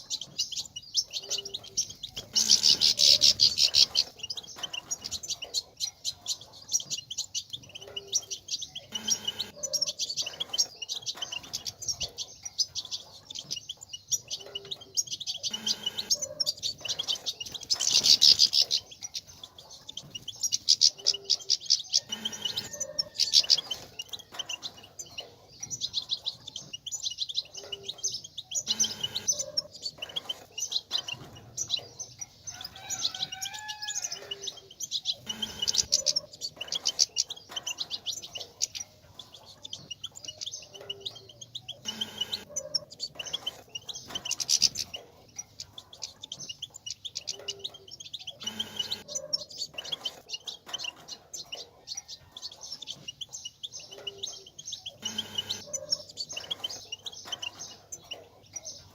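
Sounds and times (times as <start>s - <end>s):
goldfinch twittering: 0.0s - 58.9s.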